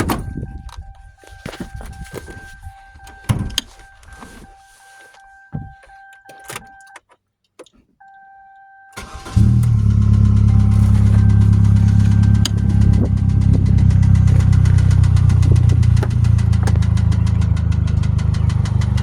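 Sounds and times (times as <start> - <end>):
car engine starting: 0.0 - 7.0, 8.9 - 19.0
high electronic warning tone: 0.0 - 7.0, 8.0 - 14.0
car door clicks and thumps: 0.0 - 7.9, 9.4 - 17.3.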